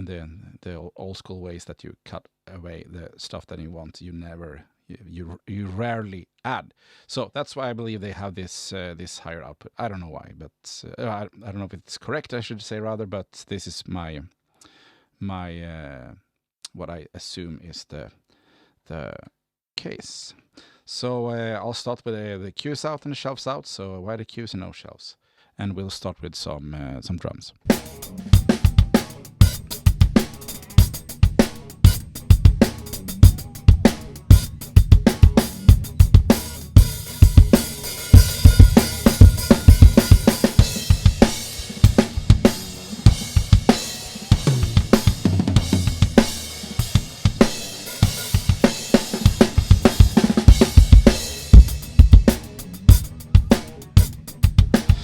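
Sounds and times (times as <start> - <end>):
hi-hat: 27.7 - 45.1, 45.8 - 55.0
cymbals: 27.7 - 55.0
snare drum: 27.7 - 55.0
kick drum: 49.6 - 52.3.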